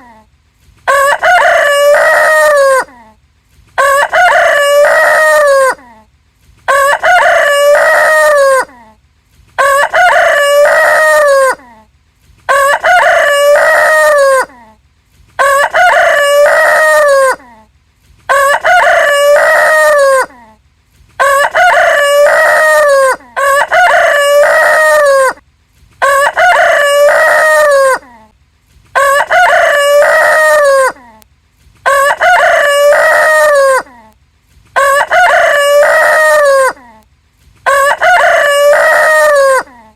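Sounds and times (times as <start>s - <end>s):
rooster crowing: 0.9s - 2.9s, 3.8s - 5.8s, 6.7s - 8.7s, 9.6s - 11.6s, 12.5s - 14.5s, 15.4s - 17.4s, 18.3s - 20.4s, 21.2s - 25.4s, 26.0s - 28.1s, 29.0s - 31.0s, 31.8s - 33.9s, 34.8s - 36.8s, 37.6s - 39.7s.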